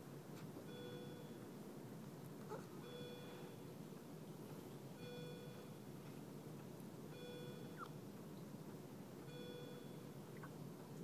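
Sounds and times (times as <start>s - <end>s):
low background hum: 0.0s - 11.0s
short electronic beeps: 2.8s - 3.6s, 5.0s - 5.7s, 7.1s - 7.9s, 9.3s - 10.1s.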